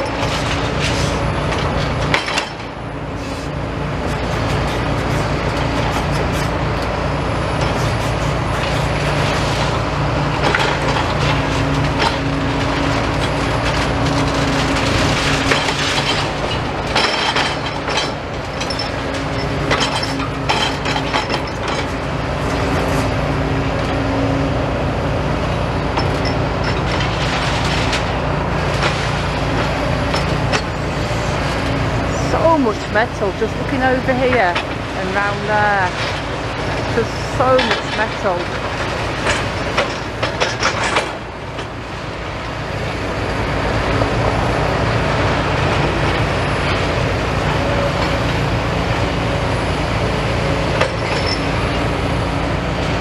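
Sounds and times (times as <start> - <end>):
excavator engine running: 0.0 - 53.0
building material cracking and crunching: 10.4 - 18.6.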